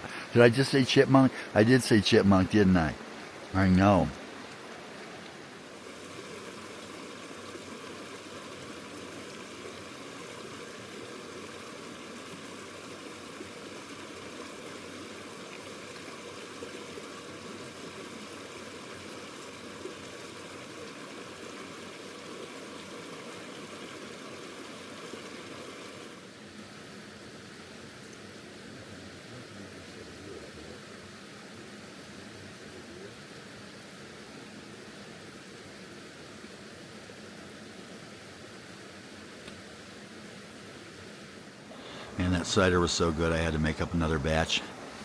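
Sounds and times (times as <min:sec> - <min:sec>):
river rushing: 0:00.0 - 0:27.4, 0:33.2 - 0:45.0
faint ticks: 0:04.1 - 0:05.4, 0:39.4 - 0:39.6.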